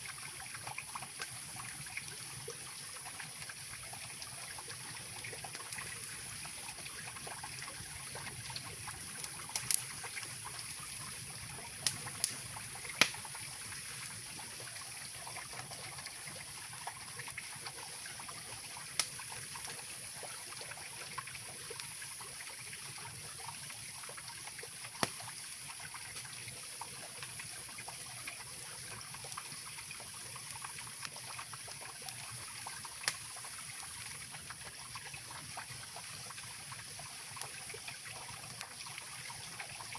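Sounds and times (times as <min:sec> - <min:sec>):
campfire wood popping: 0:03.4 - 0:14.4, 0:18.0 - 0:20.4, 0:24.5 - 0:26.5, 0:28.9 - 0:39.8.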